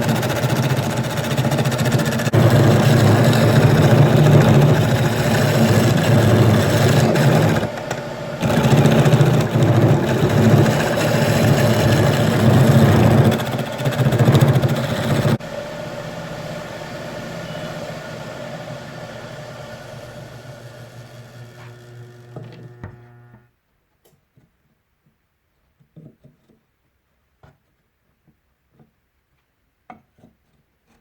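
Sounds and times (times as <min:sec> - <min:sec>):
tool cutting spinning wood: 0:00.0 - 0:15.4, 0:17.2 - 0:23.5
wood lathe running: 0:00.0 - 0:15.8, 0:16.9 - 0:23.5.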